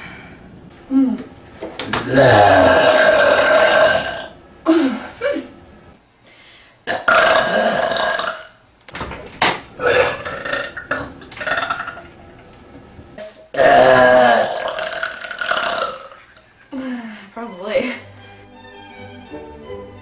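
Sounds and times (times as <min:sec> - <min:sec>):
woman burping: 0:02.0 - 0:05.4, 0:06.9 - 0:08.6, 0:09.8 - 0:12.0, 0:13.2 - 0:16.9.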